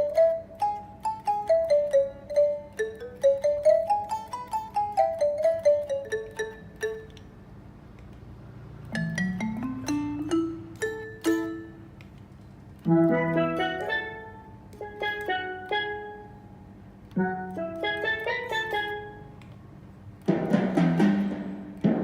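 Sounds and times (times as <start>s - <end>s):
guitar synthesizer notes and chords: 12.8s - 16.3s, 17.2s - 19.2s.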